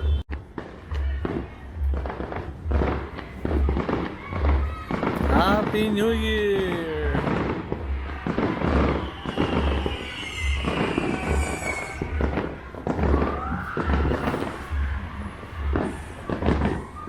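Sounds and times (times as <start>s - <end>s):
music with thudding bass beat: 0.0s - 6.4s, 10.4s - 16.8s
firecrackers banging: 0.0s - 17.0s.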